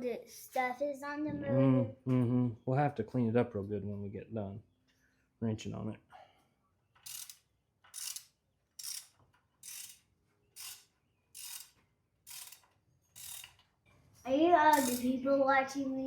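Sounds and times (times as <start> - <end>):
ratchet wrench clicking: 7.0 - 13.6, 14.7 - 15.1.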